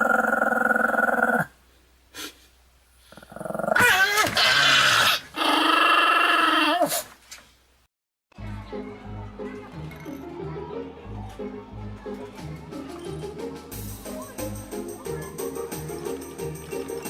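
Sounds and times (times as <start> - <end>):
toy speaker gruff growly voice: 0.0 - 1.5, 3.2 - 6.9.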